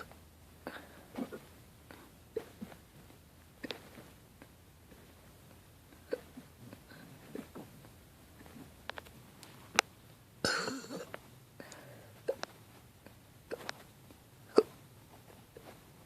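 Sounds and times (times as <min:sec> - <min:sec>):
person hiccuping: 0:06.0 - 0:07.7, 0:10.4 - 0:11.2, 0:12.2 - 0:12.5, 0:13.5 - 0:13.8, 0:14.5 - 0:14.8
breathy sound: 0:11.6 - 0:12.4.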